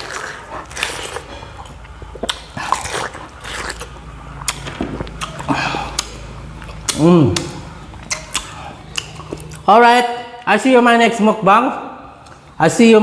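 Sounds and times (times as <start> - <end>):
person chewing crunchy food: 0.0 - 9.7
mouth clicks: 1.6 - 9.7.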